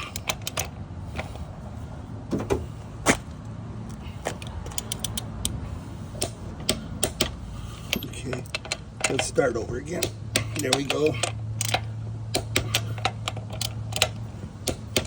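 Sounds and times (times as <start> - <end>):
wrench clicking on lug nuts: 0.0 - 1.4, 4.2 - 5.6, 6.2 - 15.0
steady low rumble: 0.0 - 15.0.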